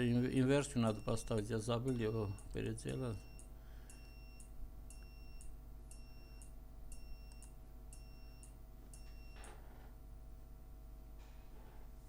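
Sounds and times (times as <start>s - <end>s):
faint high-pitched buzzer beep: 0.8s - 9.6s.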